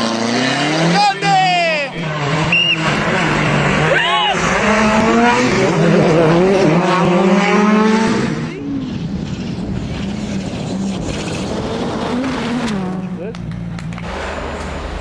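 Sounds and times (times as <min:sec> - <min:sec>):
rally car engine revving: 0:00.0 - 0:15.0.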